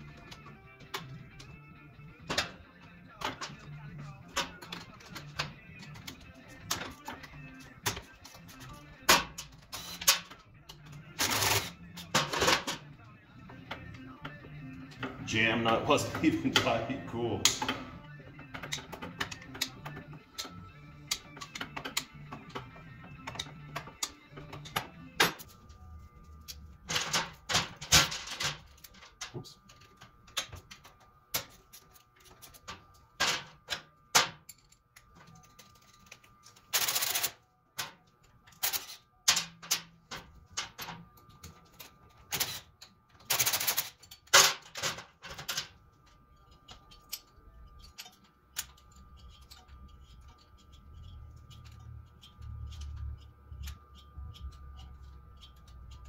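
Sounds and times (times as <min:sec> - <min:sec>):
metallic tool clicks and clanks: 0:46.3 - 0:56.0.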